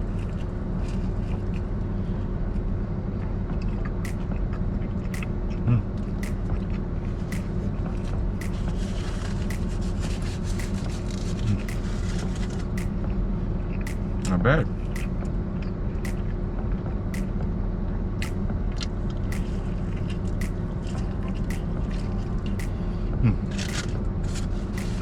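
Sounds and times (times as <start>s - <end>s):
sharp ticks: 4.1s - 4.4s, 5.1s - 5.4s, 6.2s - 6.7s, 7.3s - 7.6s, 8.4s - 8.8s, 9.5s - 9.8s, 10.6s - 10.9s, 11.7s - 11.9s, 12.8s - 13.1s, 13.9s - 14.3s, 15.0s - 15.3s, 16.1s - 16.4s, 17.2s - 17.4s, 18.2s - 18.5s, 19.3s - 19.6s, 20.4s - 20.8s, 21.5s - 21.9s, 22.6s - 22.9s, 24.8s - 25.0s.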